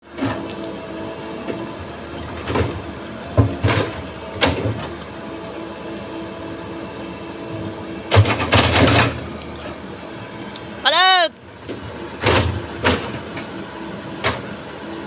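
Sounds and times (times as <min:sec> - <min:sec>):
backhoe engine running: 0:00.0 - 0:15.0
metallic clanks and knocks: 0:08.1 - 0:09.2, 0:12.2 - 0:13.5.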